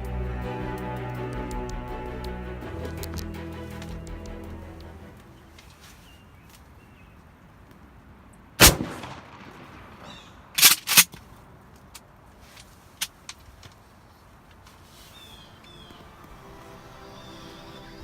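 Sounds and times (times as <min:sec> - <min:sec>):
shotgun blast: 0:08.6 - 0:10.4.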